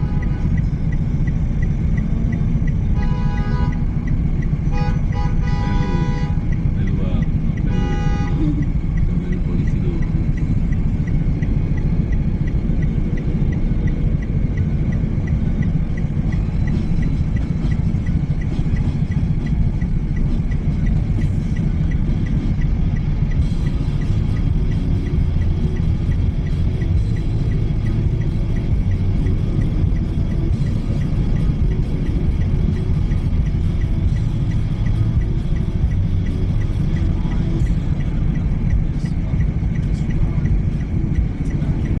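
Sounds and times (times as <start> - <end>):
car engine and tyres rumble: 0.0 - 42.0
faint regular ticking: 0.0 - 42.0
quiet music: 0.0 - 42.0.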